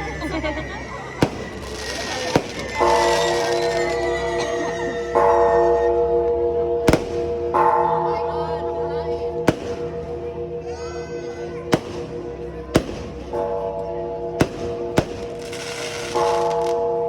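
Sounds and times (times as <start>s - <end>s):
music sustained chord: 0.0s - 17.0s
steady background noise: 0.0s - 17.0s
fireworks bangs: 1.2s - 4.2s, 6.9s - 7.4s, 9.5s - 10.0s, 11.7s - 13.4s, 14.4s - 16.8s.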